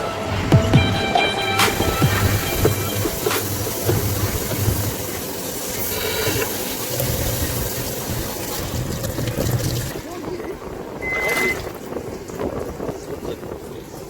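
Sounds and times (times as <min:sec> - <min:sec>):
water spraying: 0:00.0 - 0:10.1.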